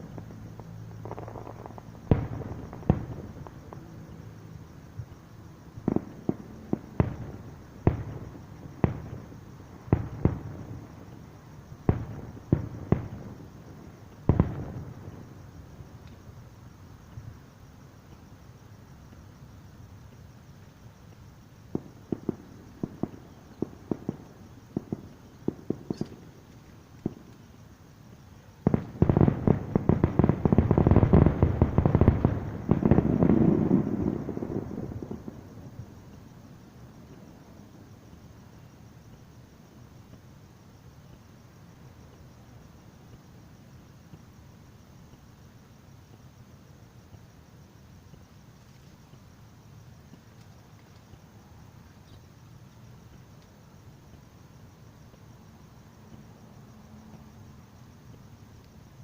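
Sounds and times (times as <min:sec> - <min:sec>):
firework shells booming: 0:01.0 - 0:04.0, 0:05.8 - 0:11.2, 0:11.8 - 0:16.2, 0:21.7 - 0:27.4, 0:28.6 - 0:36.0.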